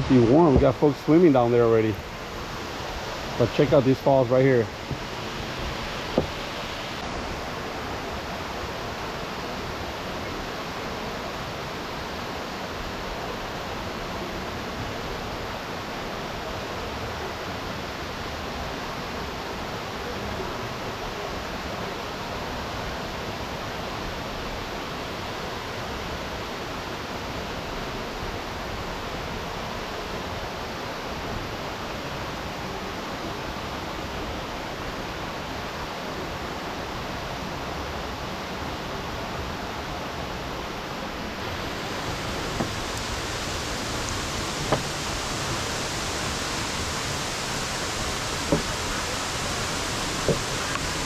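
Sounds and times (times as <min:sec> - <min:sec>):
waterfall rushing: 0:00.0 - 0:51.0.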